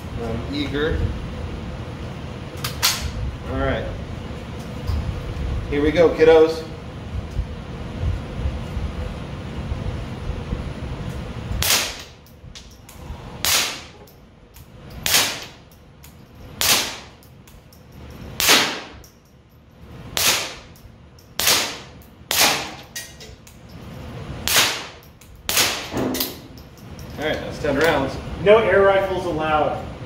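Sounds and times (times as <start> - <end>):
suppressed rifle shots: 18.4 - 19.0.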